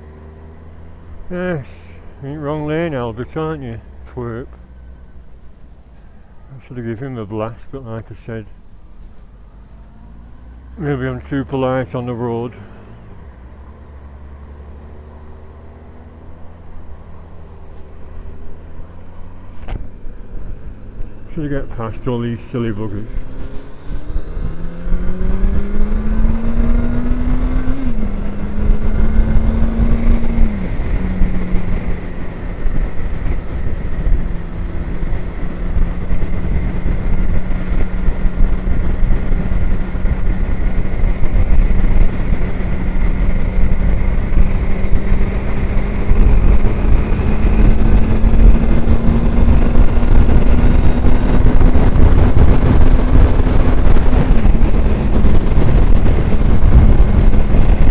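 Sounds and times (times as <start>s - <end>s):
motorcycle engine accelerating: 0.0s - 57.9s
wind rushing over microphone: 22.7s - 57.9s.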